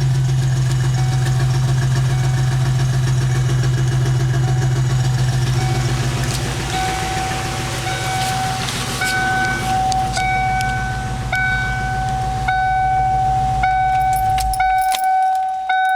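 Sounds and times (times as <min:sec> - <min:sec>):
car engine idling with misfire: 0:00.0 - 0:15.9
electronic warning chime: 0:05.6 - 0:15.9.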